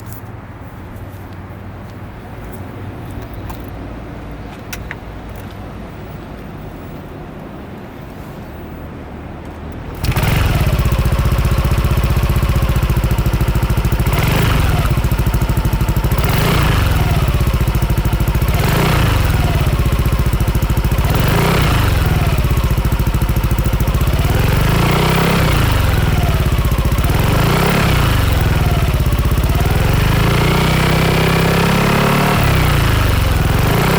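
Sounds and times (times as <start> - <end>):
low engine rumble: 8.5 - 31.6
scooter exhaust revving: 9.8 - 33.9.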